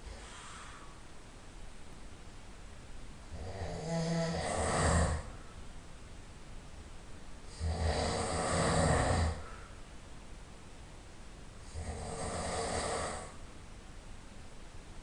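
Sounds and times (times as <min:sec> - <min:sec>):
person snoring loudly: 0:03.3 - 0:05.4, 0:07.5 - 0:09.5, 0:11.6 - 0:13.4.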